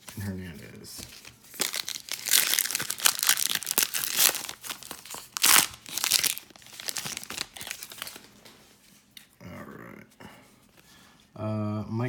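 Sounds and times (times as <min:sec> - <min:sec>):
foil wrapper tearing and crinkling: 0:01.5 - 0:08.4.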